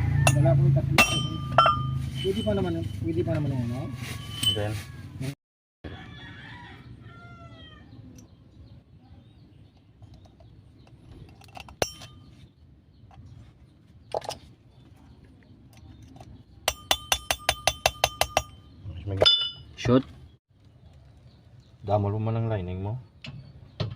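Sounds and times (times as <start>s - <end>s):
rooster crowing: 0.0s - 0.6s, 3.5s - 8.0s
ringing metal clinks: 1.0s - 2.7s, 16.7s - 19.7s.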